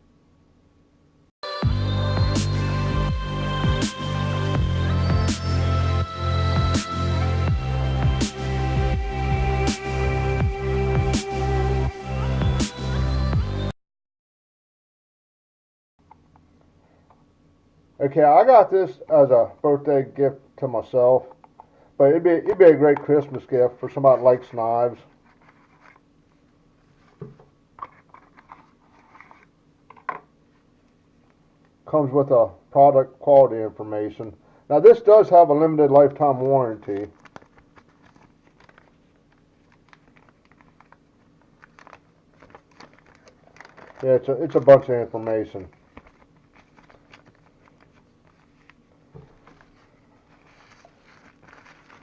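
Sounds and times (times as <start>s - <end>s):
paper and packaging rustling: 25.1s - 26.0s, 26.8s - 30.1s, 36.0s - 52.0s.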